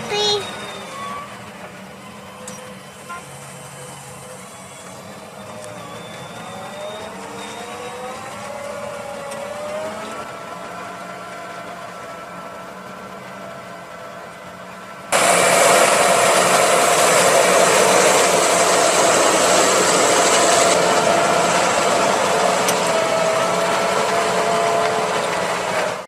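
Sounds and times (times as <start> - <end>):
tractor engine hum: 0.0 - 26.0
plough rushing and scraping soil: 15.2 - 26.0.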